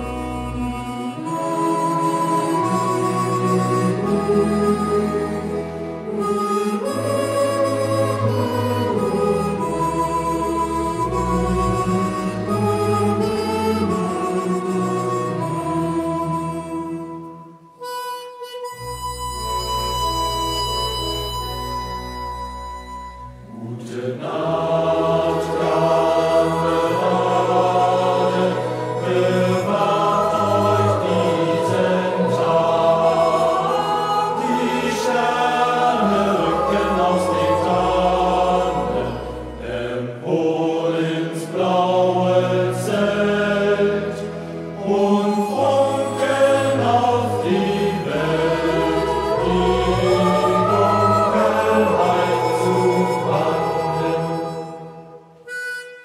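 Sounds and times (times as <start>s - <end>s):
youth choir singing in unison: 23.5s - 55.1s.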